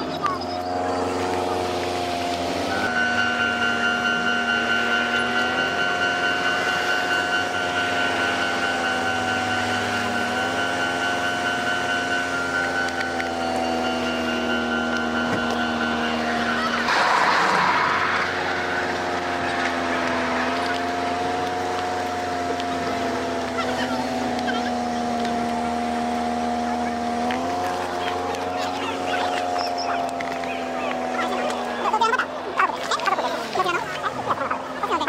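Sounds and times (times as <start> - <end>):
steady high tone: 0.0 - 25.1
vehicle engine idling: 0.0 - 35.0.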